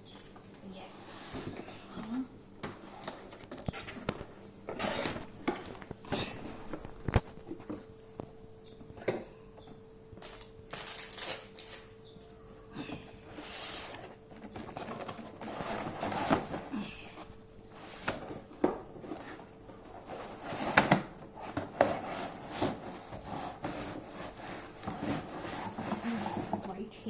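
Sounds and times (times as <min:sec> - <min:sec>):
cardboard scraping and rubbing: 0:13.3 - 0:26.7.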